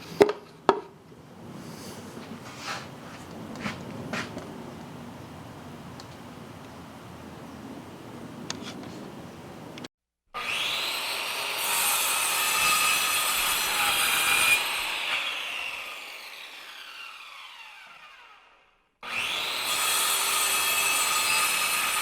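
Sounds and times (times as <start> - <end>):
electric sander on wood: 10.4 - 22.0.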